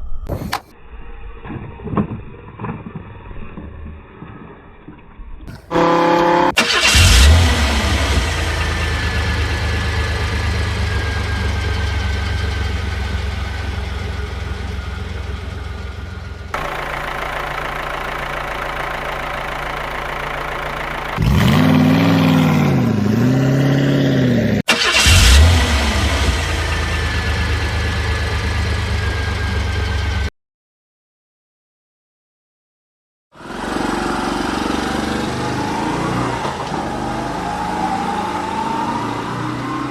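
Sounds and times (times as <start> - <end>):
car engine starting and revving: 5.5 - 30.3, 33.4 - 39.9.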